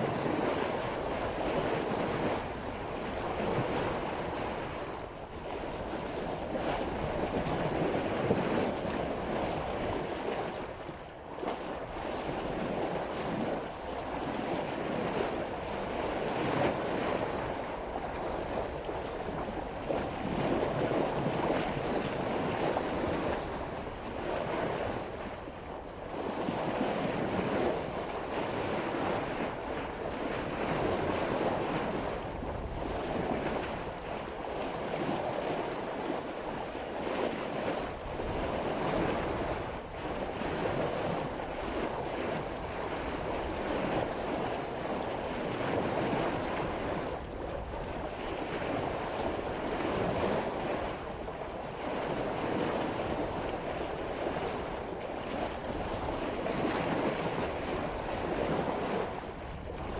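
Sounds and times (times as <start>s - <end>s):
water splashing along boat bow: 0.0s - 59.9s
wind buffeting microphone: 11.6s - 34.3s, 36.5s - 59.9s.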